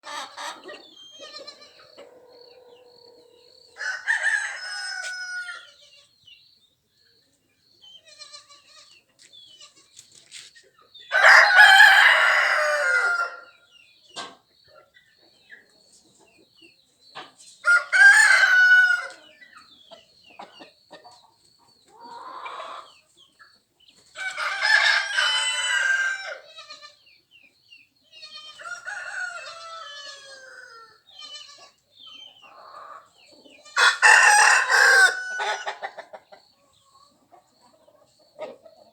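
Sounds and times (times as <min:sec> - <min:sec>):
hens clucking: 0:00.0 - 0:05.7, 0:17.1 - 0:26.4, 0:31.6 - 0:38.9
roosters crowing: 0:00.0 - 0:05.8, 0:11.1 - 0:13.6, 0:17.6 - 0:19.3, 0:22.0 - 0:23.0, 0:24.2 - 0:26.6, 0:28.4 - 0:31.7, 0:32.4 - 0:36.2.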